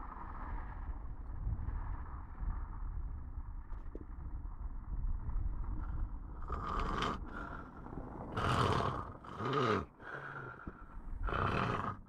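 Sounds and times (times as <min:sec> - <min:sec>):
person snoring: 0:08.4 - 0:12.0.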